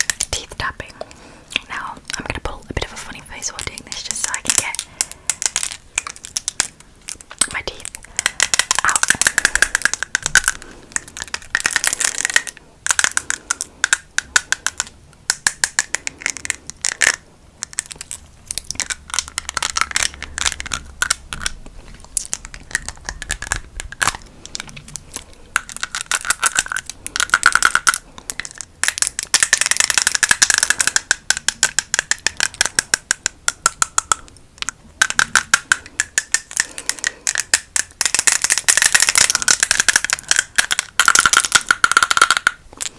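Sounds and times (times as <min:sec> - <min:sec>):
fingertip items tapping and clicking: 0:00.0 - 0:42.9.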